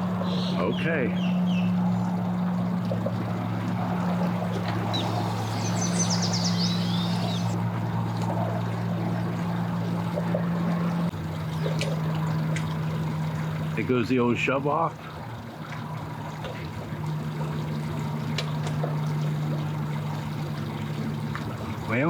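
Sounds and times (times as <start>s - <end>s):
boat engine idling: 0.0s - 22.0s
high chirps: 4.9s - 7.6s.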